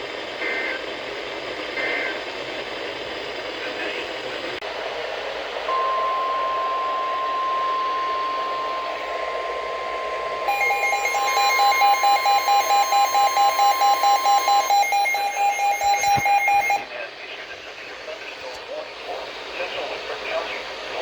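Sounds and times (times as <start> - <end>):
steady high alarm tone: 5.0 - 16.9
pulsing electronic alert beep: 5.7 - 16.8.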